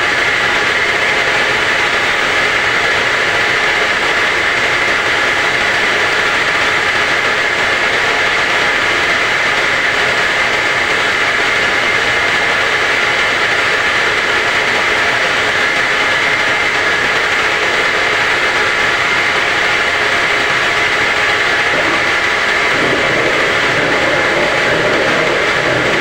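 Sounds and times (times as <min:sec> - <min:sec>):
washing machine running: 0:00.0 - 0:26.0
rough low mechanical sound: 0:18.3 - 0:26.0.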